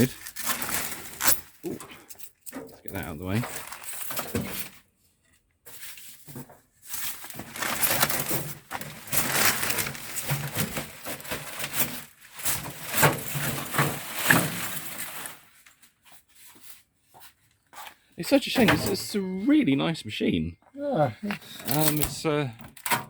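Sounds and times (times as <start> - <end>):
packaging crackly rustling: 0.0 - 1.8, 2.9 - 4.8, 6.9 - 16.0.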